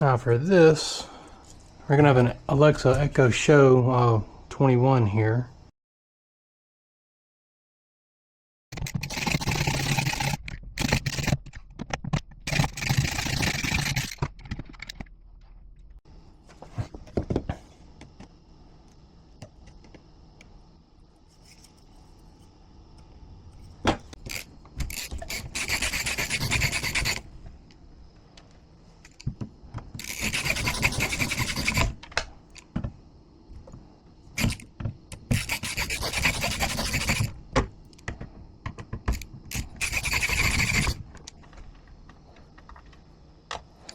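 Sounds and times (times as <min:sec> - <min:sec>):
scraping and rubbing: 0:08.7 - 0:14.9, 0:21.2 - 0:22.5, 0:23.6 - 0:27.3, 0:30.0 - 0:32.0, 0:35.2 - 0:37.4, 0:39.1 - 0:41.1.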